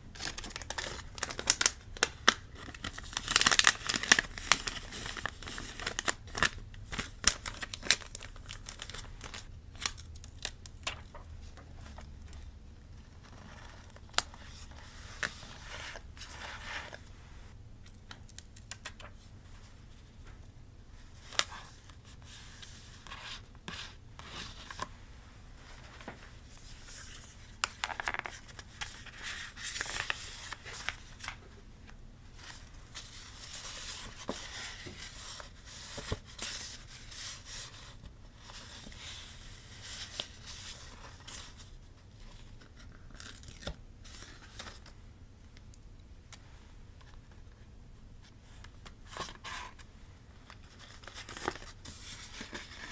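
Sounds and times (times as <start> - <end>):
paper rustling: 25.6 - 31.5, 32.3 - 45.0, 50.5 - 52.9.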